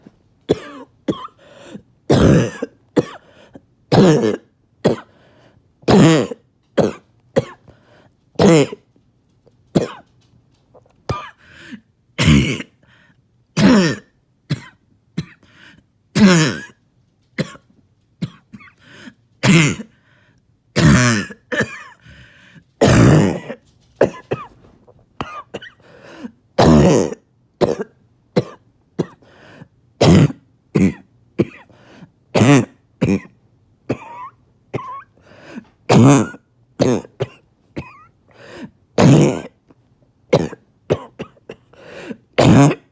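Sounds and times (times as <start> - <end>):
person coughing harshly: 0.5 - 5.2, 5.9 - 7.6, 8.4 - 8.9, 9.8 - 10.1, 11.1 - 12.8, 13.6 - 15.6, 16.2 - 16.8, 17.4 - 20.0, 20.8 - 22.2, 22.8 - 24.6, 25.2 - 29.3, 30.0 - 31.7, 32.3 - 39.6, 40.3 - 42.9.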